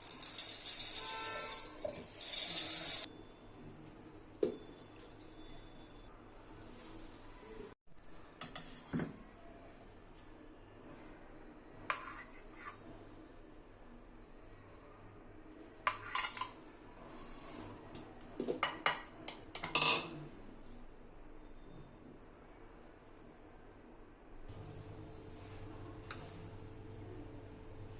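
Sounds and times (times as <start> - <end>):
spoon scraping against steel bowl: 0.6 - 3.1, 11.9 - 12.8, 15.9 - 16.6.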